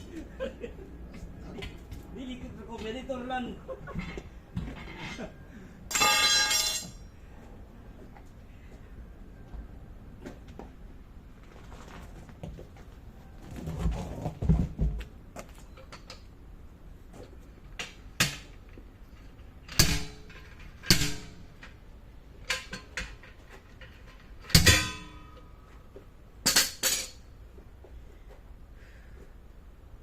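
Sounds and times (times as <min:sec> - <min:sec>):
metal clanks and knocks: 0:03.8 - 0:07.1, 0:17.7 - 0:27.3.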